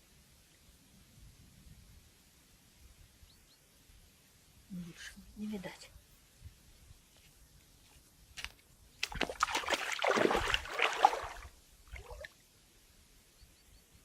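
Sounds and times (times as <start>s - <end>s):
water splashing and sloshing: 9.0s - 12.4s.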